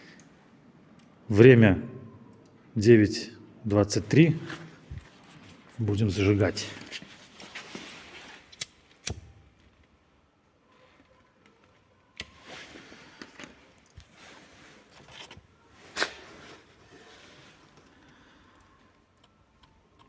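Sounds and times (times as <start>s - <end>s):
soft rustling: 4.0s - 8.5s, 12.3s - 18.4s.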